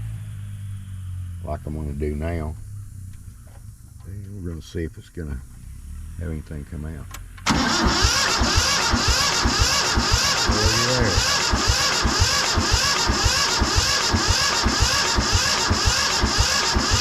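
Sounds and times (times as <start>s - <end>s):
diesel engine cranking: 2.2s - 17.0s
starter motor whine: 7.1s - 17.0s.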